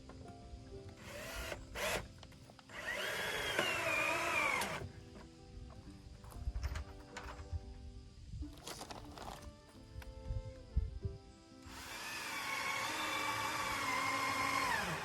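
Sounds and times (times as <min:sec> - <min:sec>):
background music: 0:00.0 - 0:15.0
power drill bursts: 0:01.0 - 0:02.1, 0:02.7 - 0:04.9, 0:11.6 - 0:15.0.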